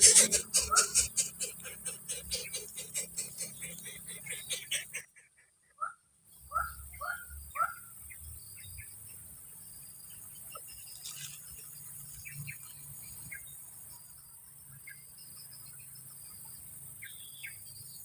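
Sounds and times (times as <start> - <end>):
bird calls and chirps: 0.0 - 14.1, 14.7 - 18.0
high-pitched insect buzz: 9.6 - 18.0.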